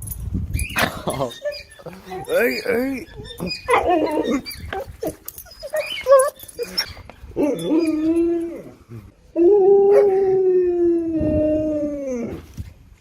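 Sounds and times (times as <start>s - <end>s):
dog howling: 1.3s - 6.8s, 9.4s - 12.4s.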